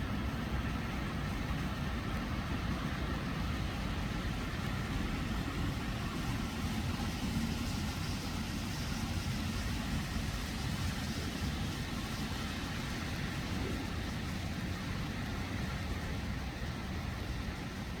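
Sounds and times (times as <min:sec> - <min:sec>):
rain falling: 0:00.2 - 0:18.0.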